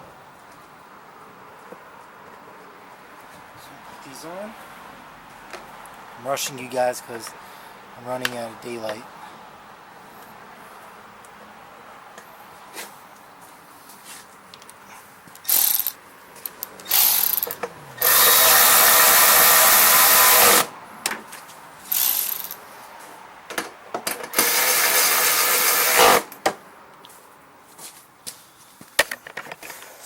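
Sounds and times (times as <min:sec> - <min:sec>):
power drill running: 0:16.9 - 0:20.7, 0:24.3 - 0:26.3.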